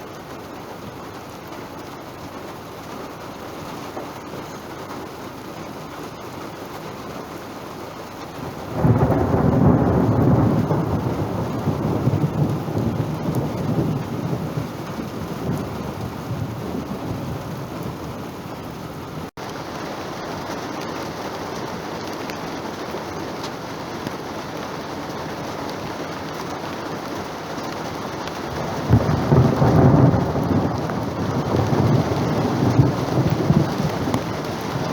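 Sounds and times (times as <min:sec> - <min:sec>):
rain hissing: 0:00.0 - 0:34.9
thunder rumbling: 0:08.4 - 0:19.3, 0:19.9 - 0:34.9.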